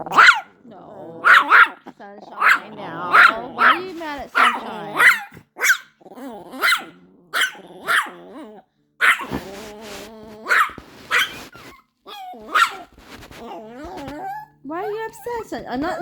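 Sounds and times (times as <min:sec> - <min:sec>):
small dog barking: 0:00.0 - 0:00.6, 0:01.2 - 0:08.4, 0:09.0 - 0:09.6, 0:10.4 - 0:16.0
small dog growling: 0:00.0 - 0:16.0.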